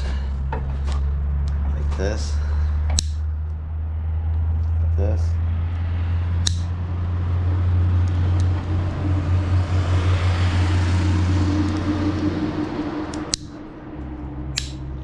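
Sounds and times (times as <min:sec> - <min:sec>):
road noise: 0:00.0 - 0:15.0
vehicle engine hum: 0:00.0 - 0:15.0
sharp clicks: 0:02.9 - 0:03.6, 0:06.4 - 0:06.7, 0:13.1 - 0:13.6, 0:14.5 - 0:14.9.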